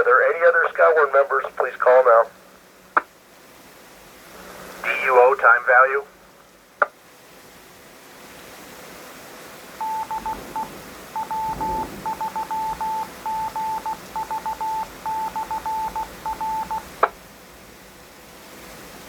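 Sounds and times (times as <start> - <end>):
morse code tone: 9.8 - 17.0.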